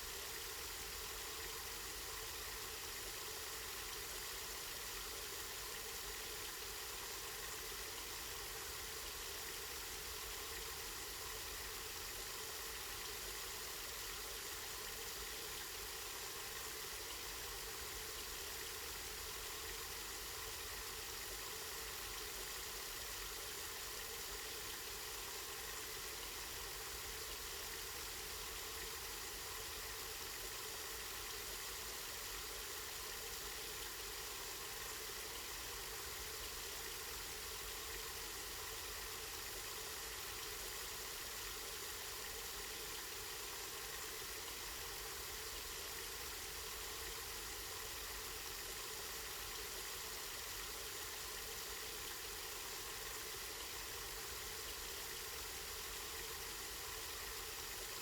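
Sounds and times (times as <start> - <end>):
spring water flowing and splashing: 0.0 - 58.0.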